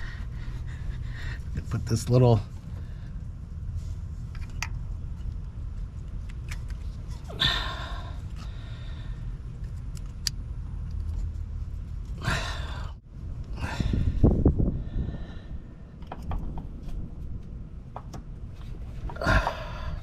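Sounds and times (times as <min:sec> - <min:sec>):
steady low rumble: 0:00.0 - 0:20.0
faint clicks of parts handled: 0:04.2 - 0:07.3, 0:09.6 - 0:11.4
person breathing out hard: 0:07.3 - 0:09.4, 0:12.2 - 0:13.0, 0:13.6 - 0:15.9, 0:19.2 - 0:20.0.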